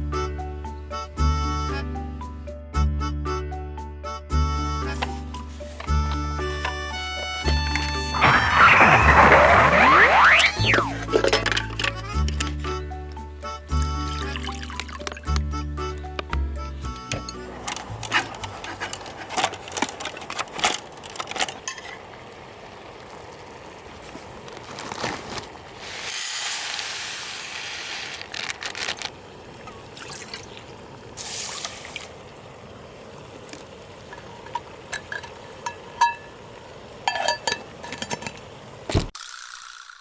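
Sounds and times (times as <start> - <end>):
liquid being poured: 5.6 - 32.2.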